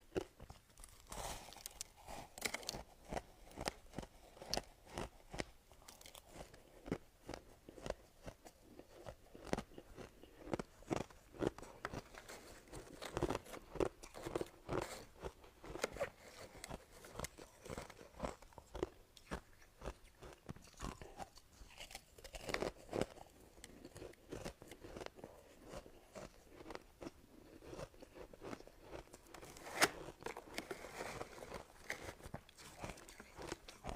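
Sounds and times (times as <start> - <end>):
ice being chewed: 0.1 - 33.9.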